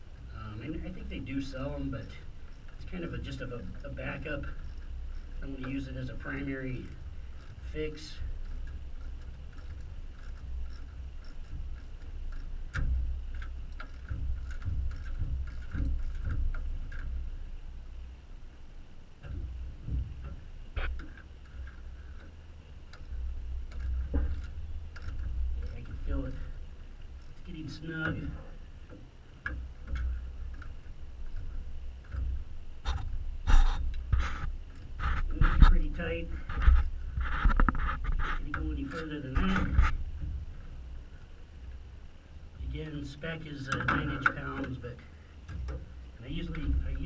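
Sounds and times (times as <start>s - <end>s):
hands and tools working: 0.0s - 41.9s, 42.5s - 47.0s
ratchet clicking: 0.8s - 17.6s, 19.2s - 34.0s.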